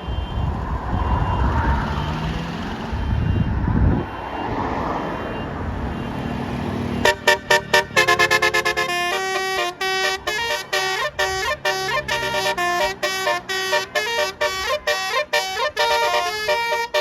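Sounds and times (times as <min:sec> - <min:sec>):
bus engine passing: 0:00.0 - 0:17.0
traffic noise: 0:00.0 - 0:17.0
bus horn playing a tune: 0:05.9 - 0:17.0.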